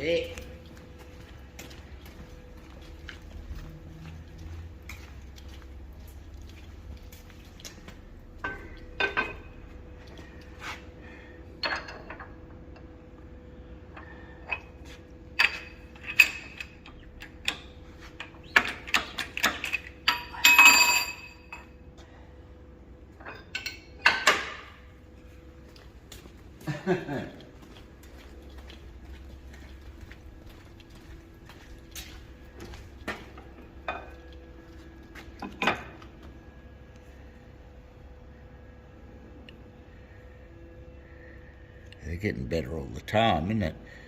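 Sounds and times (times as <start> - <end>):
faint steady hum: 0.0 - 44.0
metallic clinks and ringing: 19.6 - 21.8.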